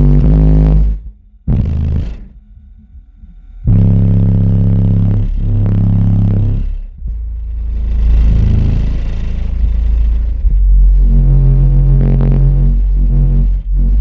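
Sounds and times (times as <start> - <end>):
bass-heavy music through subwoofer: 0.0 - 14.0.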